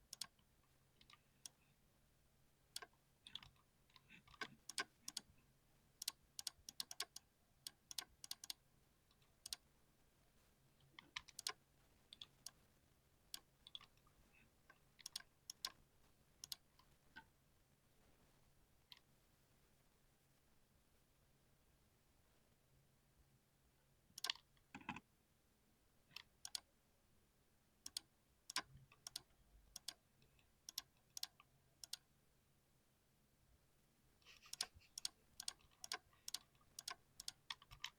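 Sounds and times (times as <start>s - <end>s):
keyboard keystroke clicks: 6.0s - 8.6s, 11.2s - 11.6s, 27.9s - 30.0s, 30.7s - 32.0s, 34.4s - 37.9s.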